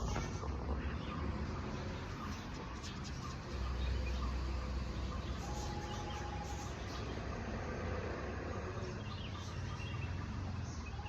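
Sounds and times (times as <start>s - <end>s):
faint bird calls: 0.0s - 7.4s.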